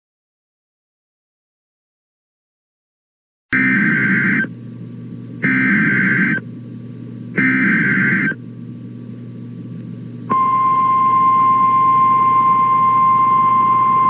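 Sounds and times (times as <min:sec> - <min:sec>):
harsh digital data tones: 0:03.6 - 0:04.5, 0:05.4 - 0:06.4, 0:07.4 - 0:08.4
steady low hum: 0:03.6 - 0:14.0.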